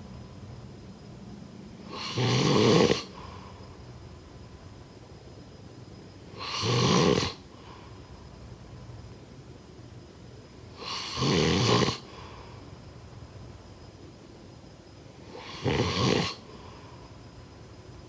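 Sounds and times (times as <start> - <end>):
loud snoring: 1.9 - 3.2, 6.4 - 7.4, 10.8 - 12.1, 15.3 - 16.5
quiet breathing: 3.0 - 3.9, 7.4 - 8.2, 12.0 - 12.9, 16.3 - 17.4.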